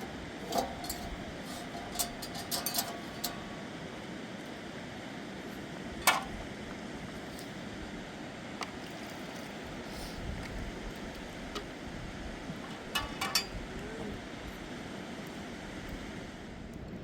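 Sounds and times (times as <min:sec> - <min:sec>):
light clinks: 0:00.4 - 0:03.4.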